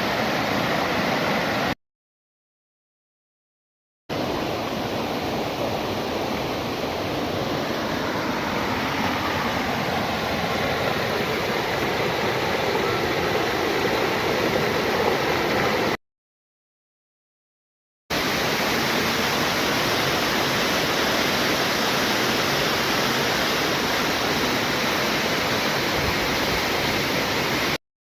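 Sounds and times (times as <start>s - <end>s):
waterfall rushing: 4.1s - 16.0s, 18.2s - 27.8s.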